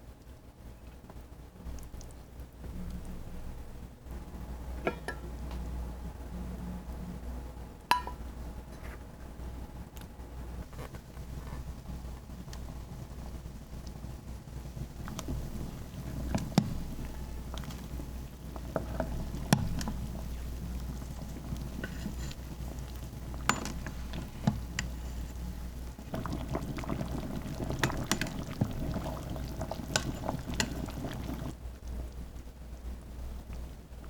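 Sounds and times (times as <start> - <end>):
liquid bubbling or pouring: 12.2 - 32.4.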